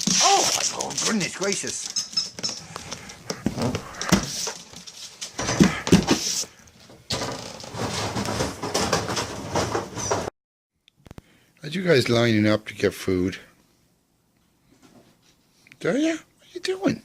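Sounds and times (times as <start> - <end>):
scuffling and clicking: 0.0 - 6.5.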